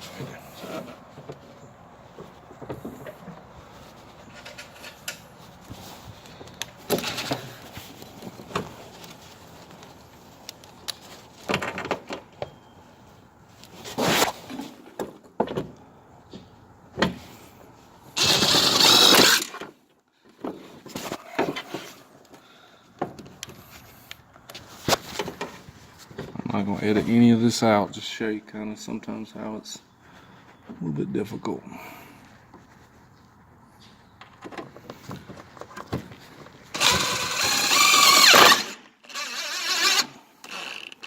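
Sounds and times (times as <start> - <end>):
power drill driving screws: 18.2 - 19.6, 36.7 - 41.0.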